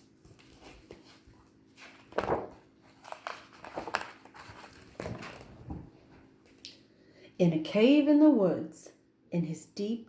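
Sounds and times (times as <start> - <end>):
paper rustling: 0.0 - 6.6.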